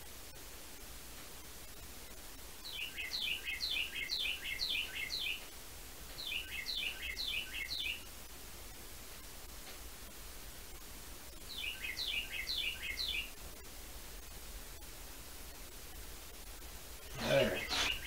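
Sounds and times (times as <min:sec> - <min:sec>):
faint steady hiss: 0:00.0 - 0:18.0
songbird chirping: 0:02.4 - 0:08.2, 0:11.3 - 0:13.7, 0:17.0 - 0:18.0.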